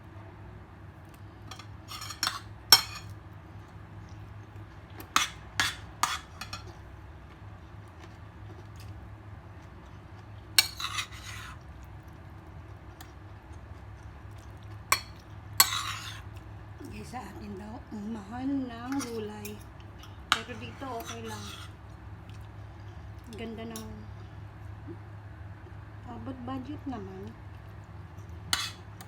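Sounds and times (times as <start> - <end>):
low steady hum: 0.0 - 29.0
dishes and utensils clinking: 1.5 - 3.1, 5.0 - 6.8, 15.0 - 16.2, 28.5 - 28.8
scrapes against a plate: 10.6 - 11.6, 15.6 - 16.2, 20.4 - 21.8, 28.5 - 28.9.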